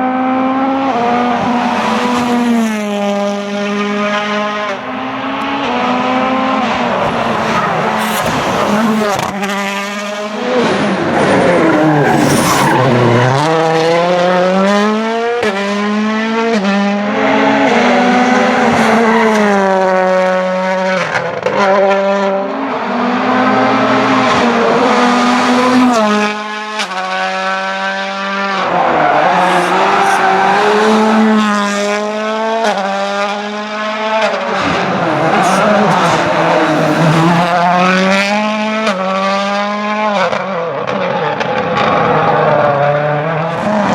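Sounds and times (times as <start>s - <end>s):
rally car engine revving: 0.0s - 43.9s
tyre noise: 10.7s - 13.8s.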